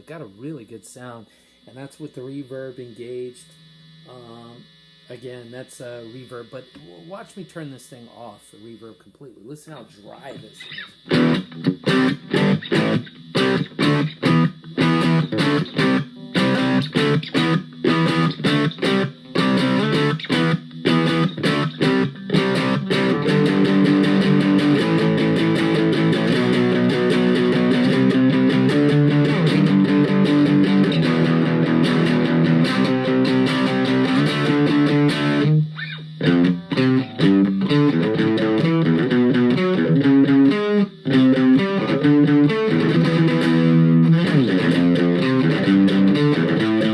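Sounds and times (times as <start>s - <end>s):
distorted electric guitar chords: 0.0s - 46.9s.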